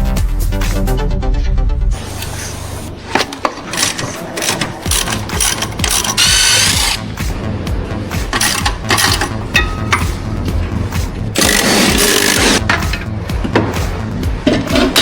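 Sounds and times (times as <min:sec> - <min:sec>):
background music: 0:00.0 - 0:15.0
power tool whining: 0:03.7 - 0:07.1, 0:11.4 - 0:12.6.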